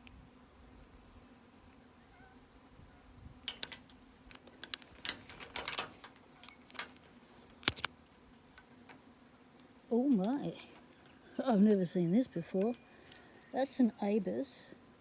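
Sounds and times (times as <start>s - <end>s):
padlocks and chain clinking: 3.5s - 7.9s.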